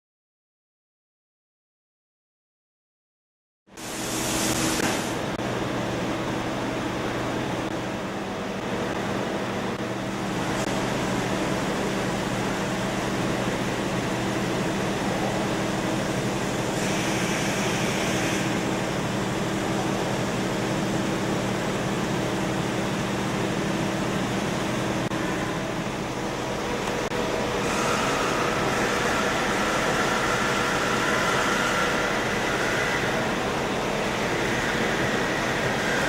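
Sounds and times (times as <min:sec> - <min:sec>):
machine tool humming: 0:03.8 - 0:36.0.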